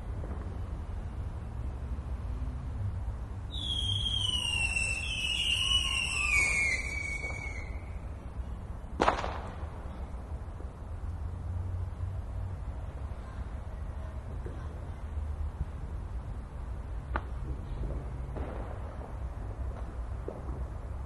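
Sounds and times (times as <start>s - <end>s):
whistling firework: 3.4s - 8.4s, 9.0s - 10.0s
firework bang: 9.0s - 10.0s, 17.1s - 20.8s.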